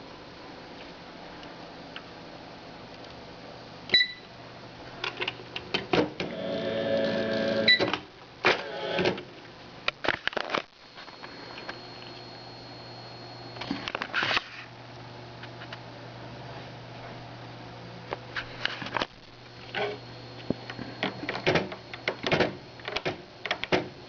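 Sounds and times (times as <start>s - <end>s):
machine hum: 0.0s - 9.9s, 10.7s - 14.2s, 14.8s - 24.0s
electronic beep: 3.9s - 4.3s
whirring typewriter mechanism: 20.7s - 23.9s.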